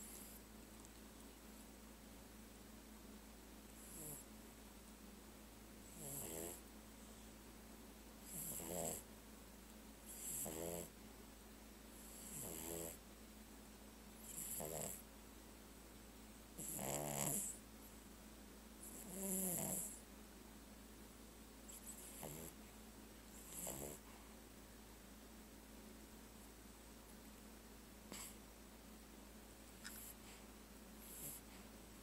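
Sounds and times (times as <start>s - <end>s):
puppy snoring: 0.0s - 0.4s, 3.7s - 4.3s, 5.8s - 6.6s, 8.2s - 9.1s, 10.1s - 11.0s, 12.0s - 13.0s, 14.2s - 15.1s, 16.6s - 17.6s, 18.8s - 20.0s, 21.7s - 22.6s, 23.3s - 24.2s, 28.1s - 28.4s, 29.8s - 30.4s, 31.0s - 31.6s.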